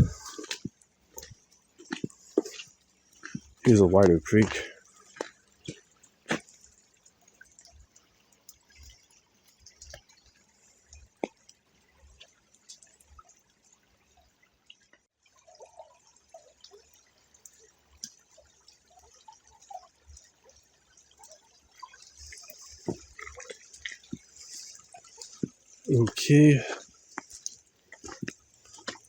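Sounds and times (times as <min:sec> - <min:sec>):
creek water trickling: 0:00.0 - 0:29.0
water drips and plinks: 0:00.0 - 0:29.0.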